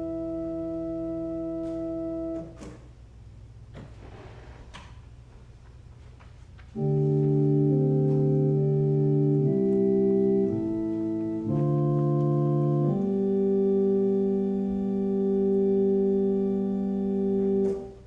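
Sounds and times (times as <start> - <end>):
organ playing slow chords: 0.0 - 2.7, 6.7 - 18.0.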